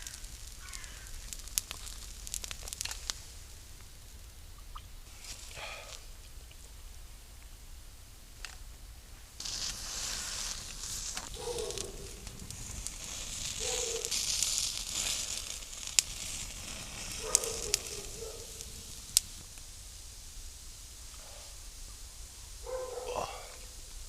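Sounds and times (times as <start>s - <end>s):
food sizzling in a pan: 0.0s - 3.7s, 9.4s - 24.0s
sharp pops: 0.0s - 3.9s, 9.4s - 20.1s.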